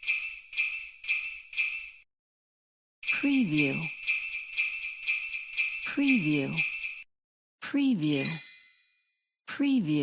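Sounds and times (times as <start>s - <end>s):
sleigh bells shaken: 0.0s - 2.0s, 3.0s - 7.1s.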